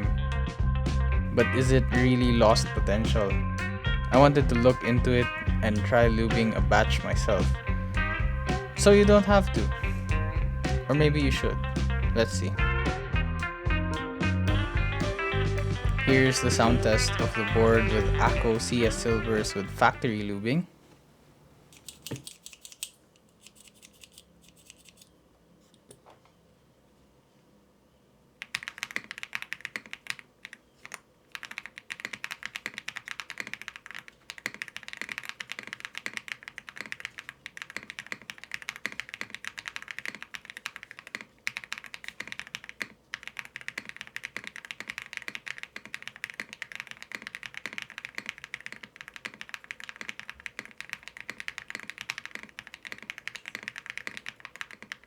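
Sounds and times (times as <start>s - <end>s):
mechanical keyboard typing: 28.4s - 55.0s.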